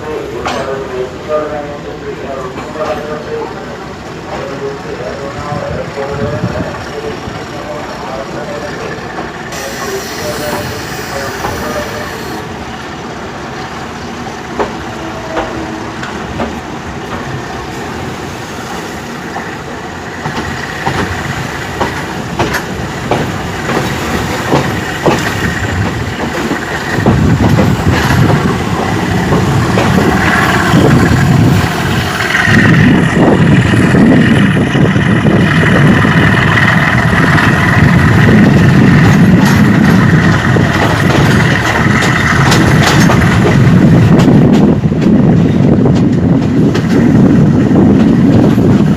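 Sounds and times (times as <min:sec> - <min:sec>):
heavy train rumble: 0:00.0 - 0:48.9
train wheel clanks and clicks: 0:00.2 - 0:01.0, 0:02.4 - 0:03.4, 0:08.0 - 0:12.0, 0:14.5 - 0:17.4, 0:20.2 - 0:34.5, 0:35.4 - 0:47.3.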